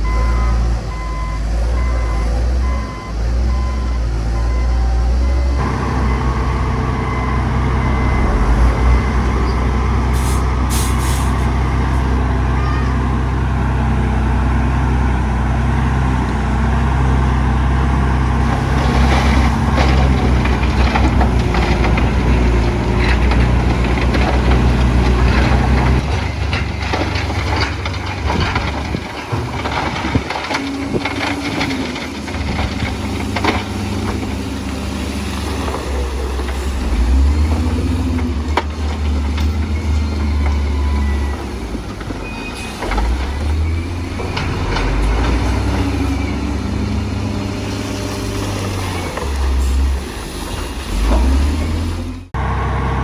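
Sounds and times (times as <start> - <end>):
heavy diesel machinery drone: 0.0 - 53.0
rocks knocking and clattering: 18.4 - 36.0.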